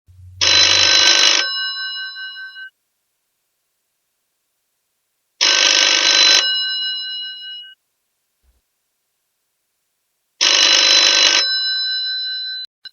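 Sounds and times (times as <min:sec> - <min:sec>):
old telephone bell ringing: 0:05.4 - 0:07.8, 0:10.4 - 0:12.7.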